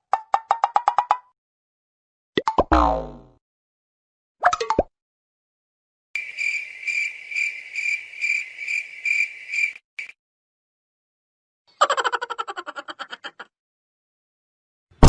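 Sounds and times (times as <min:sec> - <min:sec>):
cartoon sound effect: 0:02.4 - 0:03.4
cricket chirping: 0:06.2 - 0:10.2.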